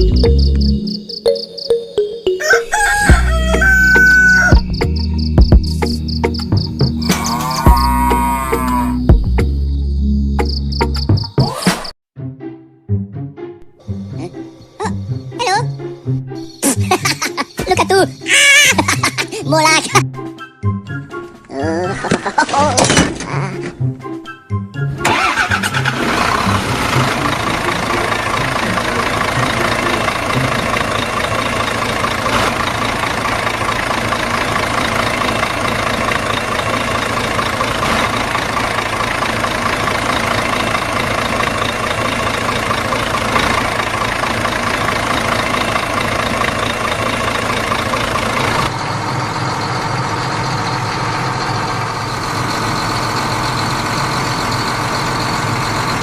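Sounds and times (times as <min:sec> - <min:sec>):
engine running: 0:03.1 - 0:10.8, 0:22.0 - 0:56.0.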